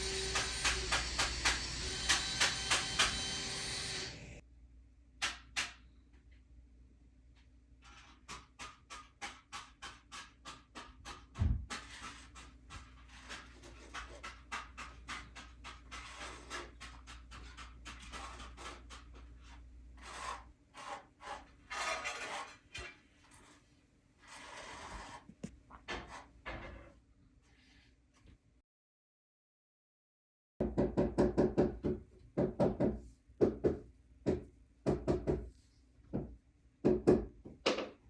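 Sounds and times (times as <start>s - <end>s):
hand tool scraping hard surface: 7.8s - 23.6s, 24.2s - 26.9s.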